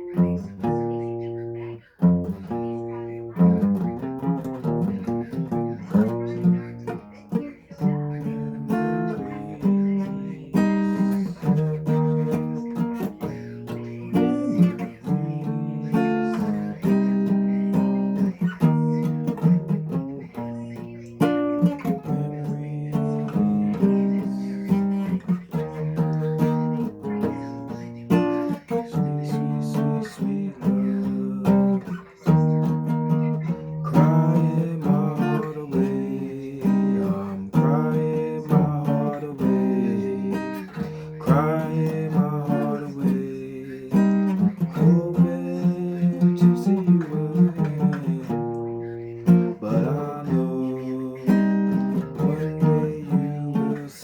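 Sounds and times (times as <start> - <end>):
acoustic guitar playing: 0.0 - 54.0.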